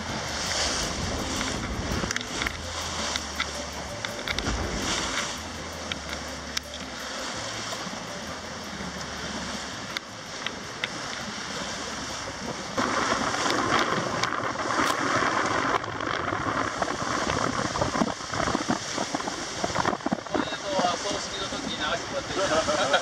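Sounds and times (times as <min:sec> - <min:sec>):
faint clicks: 0:00.0 - 0:20.3
water rushing past a hull: 0:00.0 - 0:23.0
wind on microphone: 0:00.0 - 0:23.0.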